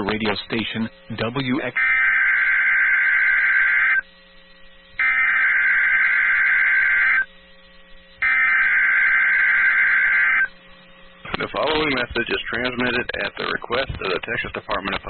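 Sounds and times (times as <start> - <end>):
faint steady hum: 0.0 - 15.0
warbling digital data tones: 1.4 - 4.1, 5.0 - 7.3, 8.2 - 10.5.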